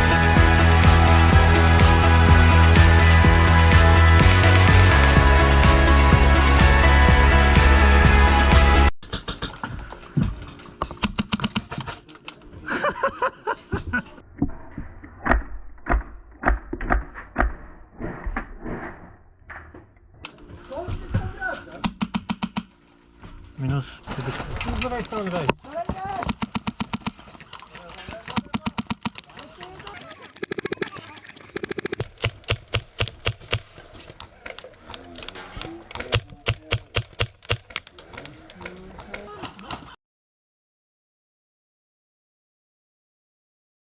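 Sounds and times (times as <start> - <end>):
sharp clicks and knocks: 10.8 - 12.4, 21.8 - 22.7, 26.2 - 33.6.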